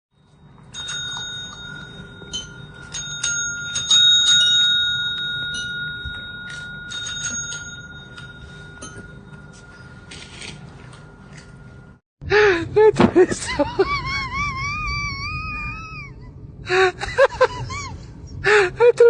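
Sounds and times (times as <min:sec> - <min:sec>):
small bell ringing: 0:00.2 - 0:12.0.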